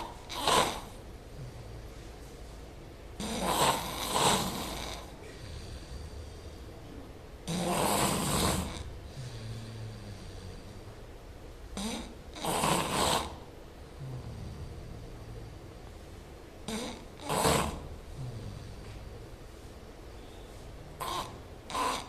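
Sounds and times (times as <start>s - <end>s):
quiet breathing: 0.0s - 22.0s
man snoring loudly: 3.2s - 6.1s, 7.5s - 10.5s, 11.8s - 13.4s, 16.7s - 18.8s.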